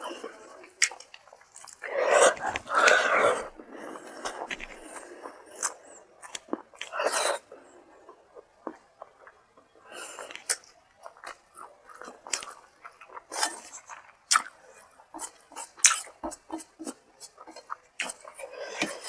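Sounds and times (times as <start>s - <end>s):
person chewing and smacking: 0.4s - 7.0s, 8.1s - 19.0s
wet mouth clicks: 0.7s - 3.6s, 4.2s - 5.0s, 5.6s - 7.0s, 10.2s - 14.6s, 15.2s - 19.0s.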